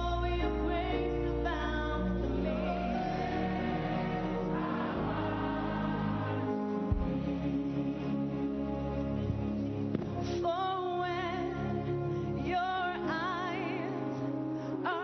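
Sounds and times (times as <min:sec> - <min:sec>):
choir singing gospel music: 0:00.0 - 0:09.6.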